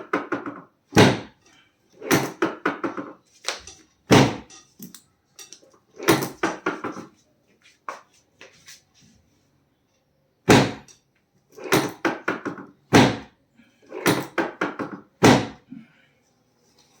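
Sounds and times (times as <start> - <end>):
loud thumps of chiropractic adjustments: 0.1 - 1.4, 4.1 - 4.5, 10.5 - 10.9, 11.7 - 13.3, 14.1 - 15.6.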